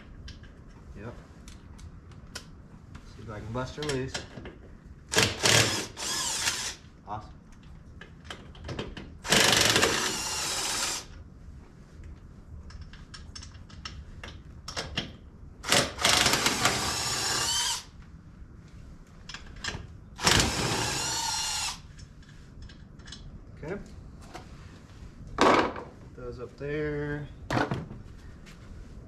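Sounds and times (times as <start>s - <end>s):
power tool whining: 5.2s - 6.8s, 9.3s - 11.1s, 15.7s - 17.9s, 20.2s - 21.8s.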